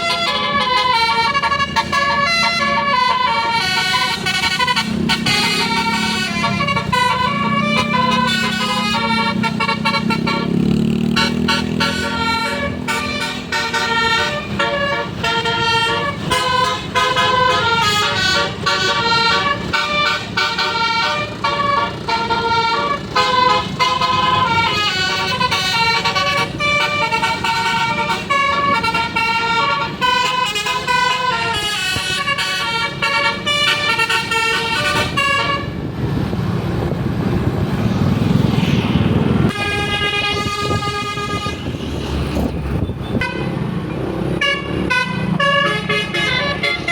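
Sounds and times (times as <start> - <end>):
held horn chord: 0.0 - 35.7
bus horn playing melody: 0.0 - 36.3, 39.4 - 42.4, 43.0 - 46.9
rushing vehicle noise: 0.0 - 46.9.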